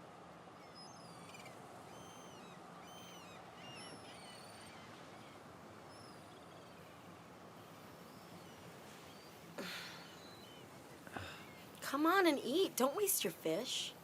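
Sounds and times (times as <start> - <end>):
soft steady hiss: 0.0 - 14.0
small birds chirping: 0.6 - 10.7.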